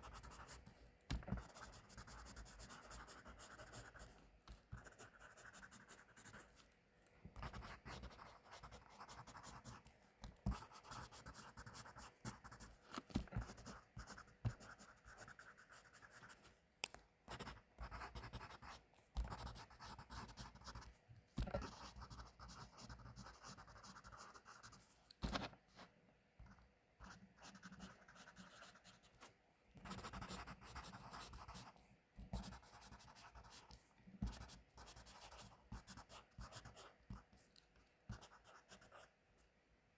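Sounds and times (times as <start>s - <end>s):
pencil writing on paper: 0.0s - 6.6s, 7.4s - 16.4s, 17.3s - 25.5s, 26.4s - 29.2s, 29.8s - 37.4s, 38.1s - 39.1s
pencil taps: 14.4s - 14.7s.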